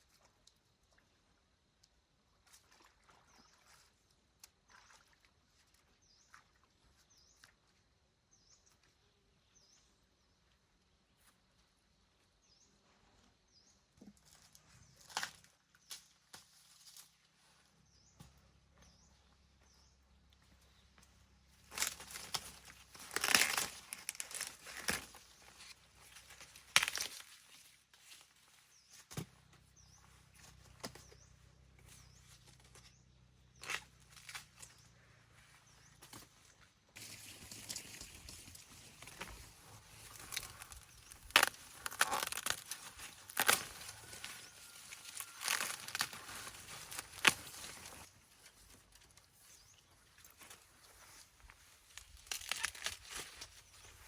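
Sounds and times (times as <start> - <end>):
rustling and crinkling: 14.0 - 33.0, 33.6 - 54.0
dry stems snapping: 21.7 - 25.2, 26.7 - 27.2, 40.1 - 48.0, 52.0 - 53.5.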